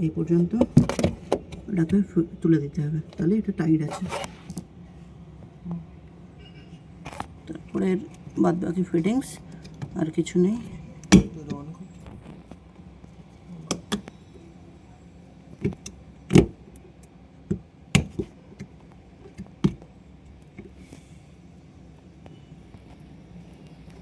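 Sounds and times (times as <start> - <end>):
faint steady low hum: 0.0 - 24.0
sharp clicks and knocks of parts: 0.6 - 2.0.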